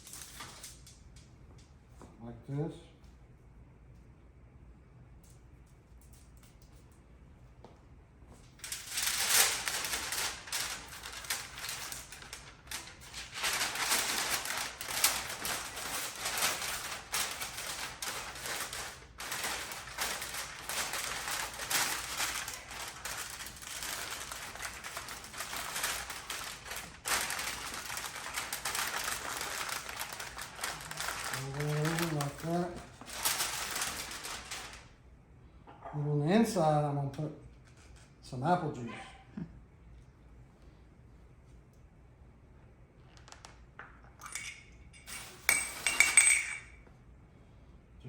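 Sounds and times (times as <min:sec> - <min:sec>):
aluminium foil crinkling: 0:00.0 - 0:01.3, 0:08.5 - 0:35.0.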